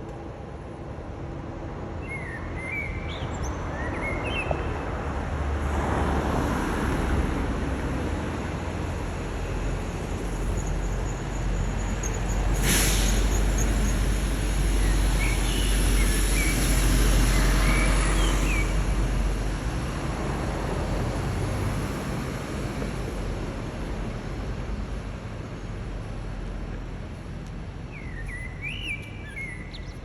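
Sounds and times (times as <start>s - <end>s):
low rumble of city traffic: 0.0s - 30.0s
sharp hiss: 12.0s - 16.9s
nightingale singing: 27.9s - 30.0s.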